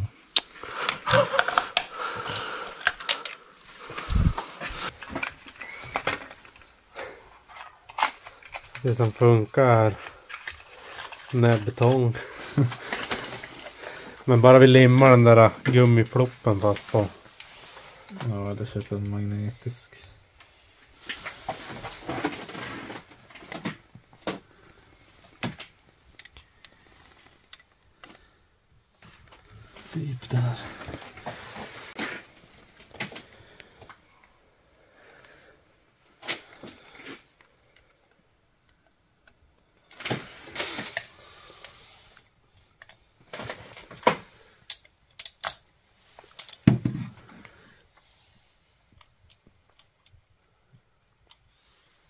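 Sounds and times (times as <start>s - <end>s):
rustling and scraping: 0.8s - 19.4s, 20.4s - 28.4s, 29.0s - 33.4s
sharp metallic clicks: 44.7s - 45.6s.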